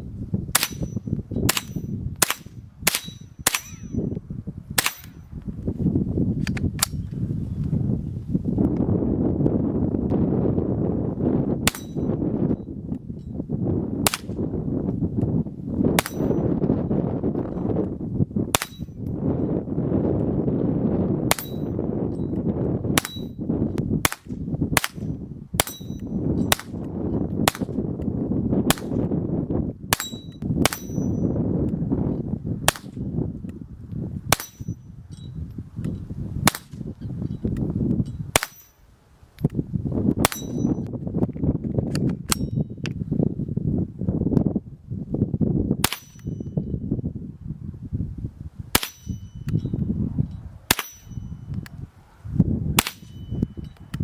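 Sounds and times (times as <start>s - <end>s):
high metallic ring: 0.6s - 2.0s, 3.0s - 4.1s, 11.7s - 13.4s, 18.6s - 19.1s, 21.3s - 22.4s, 23.0s - 23.5s, 25.6s - 26.6s, 29.9s - 31.4s, 34.4s - 35.5s, 40.3s - 40.9s, 42.3s - 42.8s, 45.9s - 46.7s, 48.8s - 51.5s, 52.9s - 53.9s
rifle gunshots: 1.5s - 3.9s, 4.8s - 5.1s.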